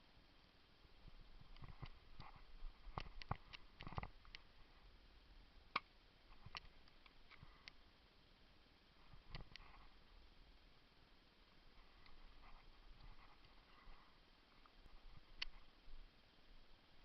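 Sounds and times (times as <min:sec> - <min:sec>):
faint clicks and knocks: 0:01.0 - 0:04.5, 0:05.7 - 0:07.8, 0:09.0 - 0:10.0, 0:11.8 - 0:16.0.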